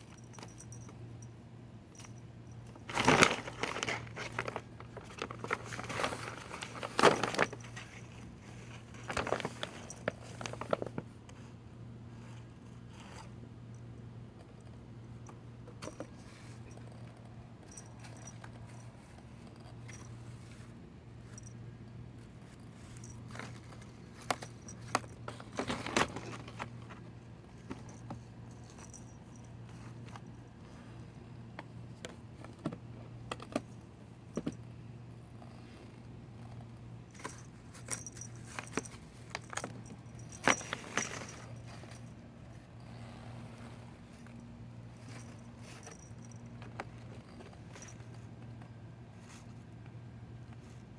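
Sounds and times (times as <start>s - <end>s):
paper bags rustling: 2.8s - 11.1s, 23.0s - 28.0s.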